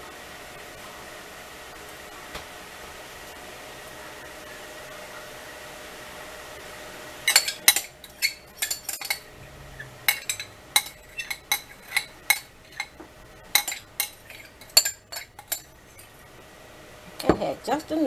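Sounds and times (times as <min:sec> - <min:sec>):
utensil clinking against dish: 0:07.3 - 0:09.3, 0:10.0 - 0:16.2, 0:17.1 - 0:18.0.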